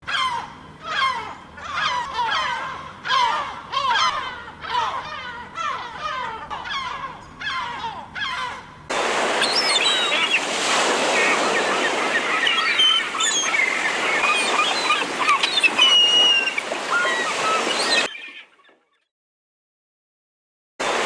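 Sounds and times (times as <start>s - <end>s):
gulls calling: 0.0s - 18.9s
loud steady rushing noise: 8.9s - 12.4s.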